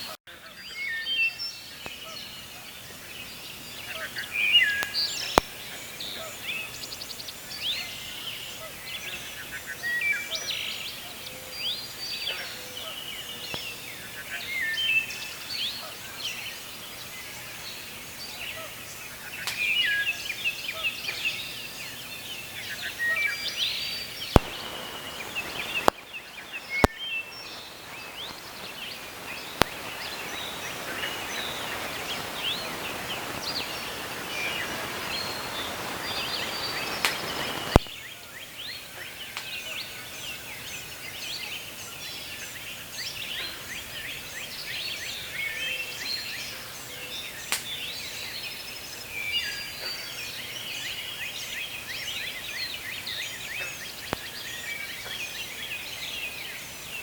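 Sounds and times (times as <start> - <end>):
birds chirping and calling: 18.4 - 37.9
steady rushing noise: 24.2 - 38.0
sharp clicks: 24.3 - 32.7, 37.0 - 37.9.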